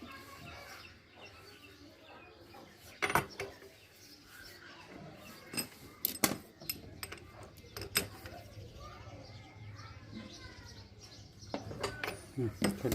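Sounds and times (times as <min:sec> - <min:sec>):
metal tools clinking: 0:05.4 - 0:08.4, 0:11.5 - 0:12.9.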